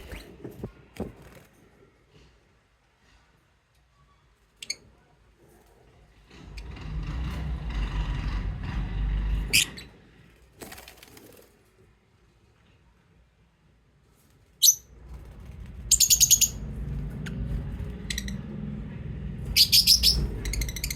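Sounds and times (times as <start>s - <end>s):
low rumble: 15.0s - 20.9s
lovebirds chirping: 19.5s - 20.9s.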